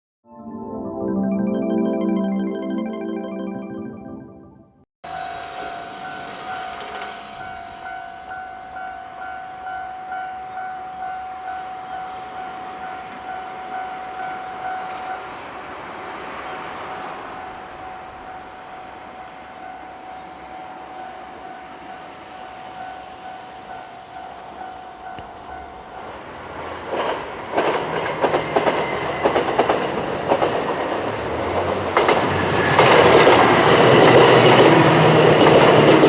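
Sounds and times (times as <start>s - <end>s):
approaching train rushing: 5.1s - 8.5s, 11.5s - 36.0s.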